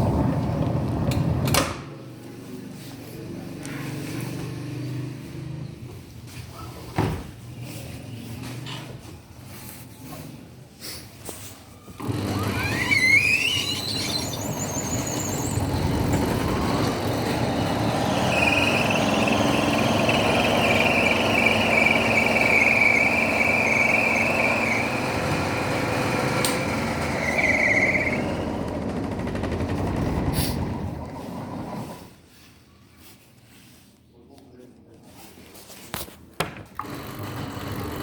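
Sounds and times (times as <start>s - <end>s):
high-pitched squeal: 12.0s - 29.7s.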